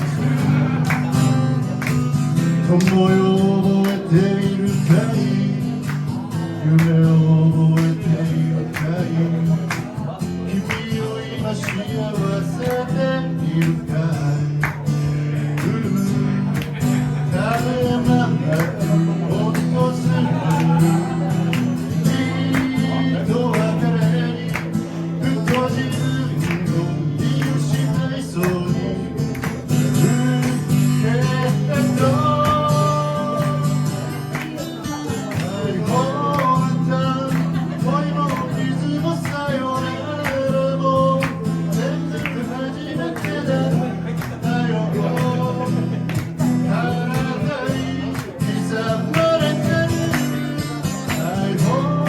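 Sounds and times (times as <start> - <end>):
acoustic guitar strumming: 0.0 - 52.0.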